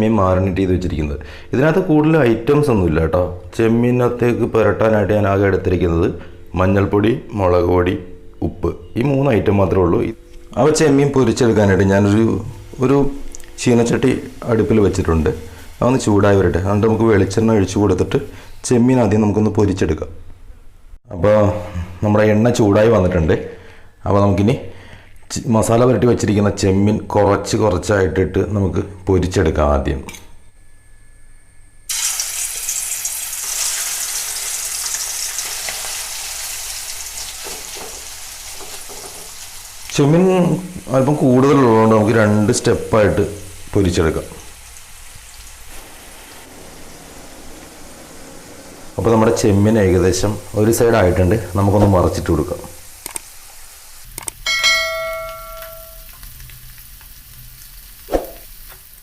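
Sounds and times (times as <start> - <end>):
prawns sizzling in hot oil: 12.4 - 18.6, 31.9 - 59.0.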